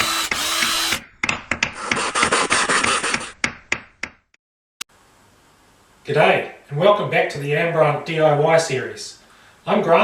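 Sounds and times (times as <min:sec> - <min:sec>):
sharp clicks and knocks: 0:00.0 - 0:04.2
rasping scraping noise: 0:01.8 - 0:03.4.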